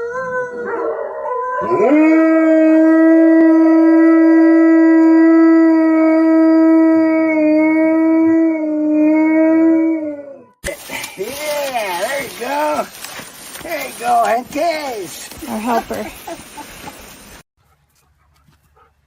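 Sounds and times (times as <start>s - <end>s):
dog howling: 0.0s - 10.6s.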